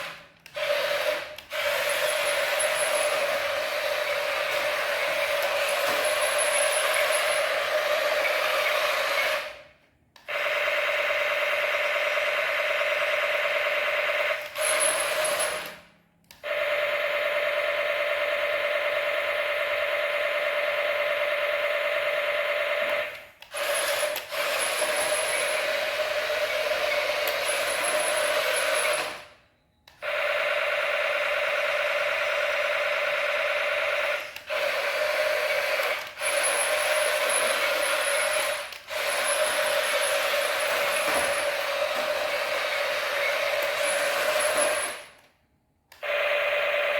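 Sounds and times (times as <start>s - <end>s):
toy motor gearbox whirring: 0.0s - 9.6s, 14.4s - 15.9s, 23.4s - 29.3s, 34.1s - 45.3s.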